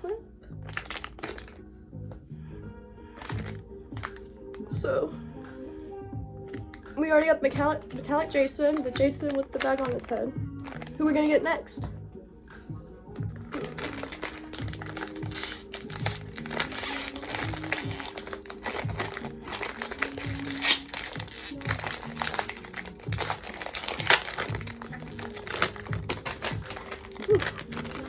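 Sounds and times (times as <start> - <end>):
background music: 0.0 - 28.0
packaging crinkling: 0.7 - 1.6, 3.1 - 4.3, 8.8 - 11.0, 13.4 - 28.0.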